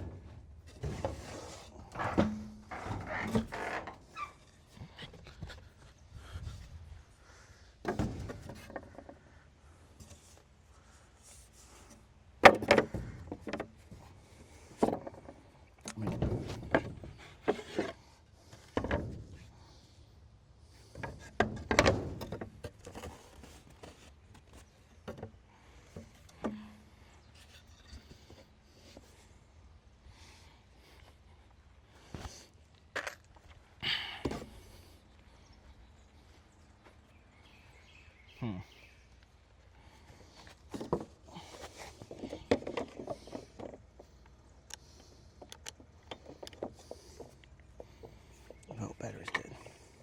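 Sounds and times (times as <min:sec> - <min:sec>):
wooden boards knocking and thudding: 0:00.0 - 0:03.6, 0:07.8 - 0:09.2, 0:12.4 - 0:14.1, 0:14.7 - 0:18.0, 0:18.6 - 0:19.4, 0:20.9 - 0:24.0, 0:40.7 - 0:43.8.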